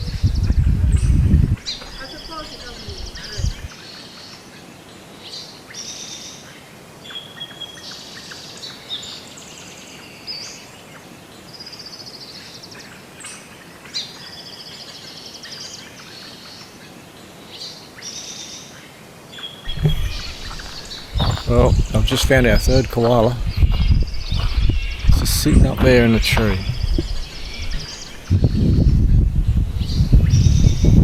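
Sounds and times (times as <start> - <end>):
faint outdoor background noise: 0.0 - 31.0
small birds singing: 0.0 - 31.0.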